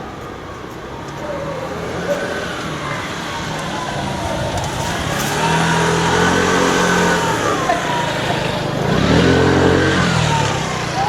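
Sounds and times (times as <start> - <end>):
vehicle engines pulling away: 0.0 - 11.0.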